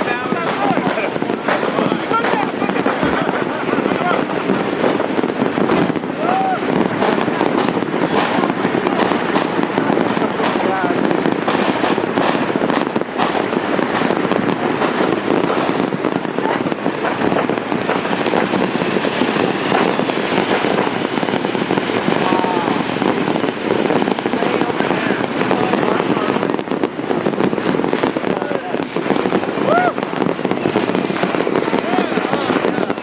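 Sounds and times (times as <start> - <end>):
firecrackers crackling: 0.0 - 33.0.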